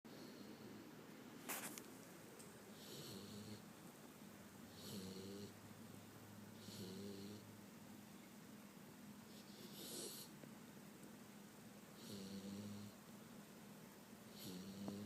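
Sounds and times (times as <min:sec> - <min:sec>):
puppy snoring faintly: 0:00.1 - 0:01.0, 0:02.7 - 0:03.7, 0:04.7 - 0:05.6, 0:06.5 - 0:07.6, 0:09.2 - 0:10.4, 0:11.9 - 0:13.0, 0:14.3 - 0:15.0.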